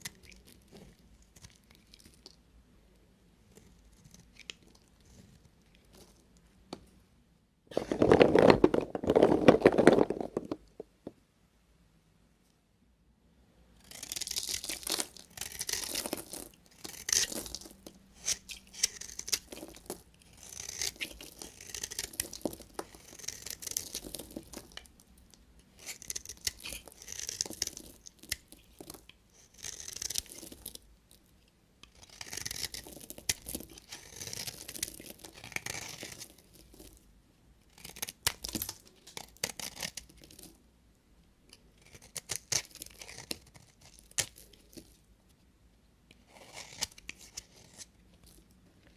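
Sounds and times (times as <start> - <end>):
knife cutting soap: 13.8 - 30.8, 31.8 - 36.9, 37.6 - 40.5, 41.5 - 45.0, 46.1 - 48.0.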